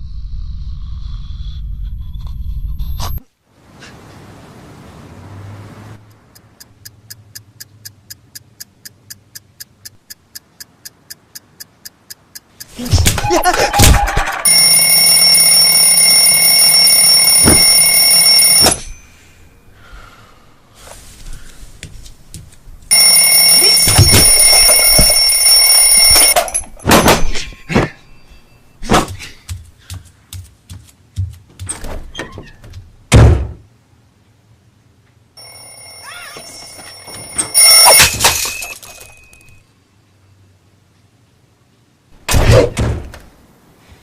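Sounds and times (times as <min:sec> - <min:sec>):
loud alarm bell ringing: 0:14.4 - 0:19.3, 0:22.9 - 0:27.2, 0:35.4 - 0:39.6
sharp knocks and thuds: 0:28.8 - 0:33.7, 0:42.3 - 0:43.3.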